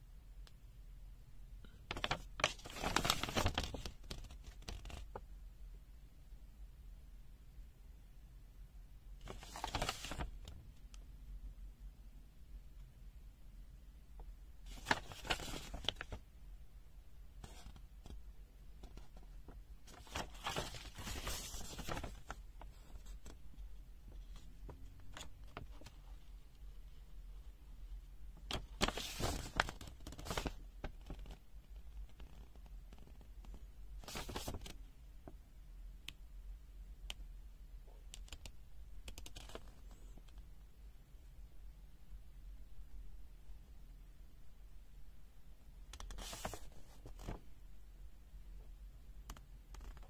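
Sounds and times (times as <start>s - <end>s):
paper pages rustling: 1.9s - 5.2s, 9.2s - 10.6s, 14.7s - 16.2s, 18.8s - 23.5s, 28.5s - 31.4s, 34.0s - 34.8s, 46.0s - 47.4s.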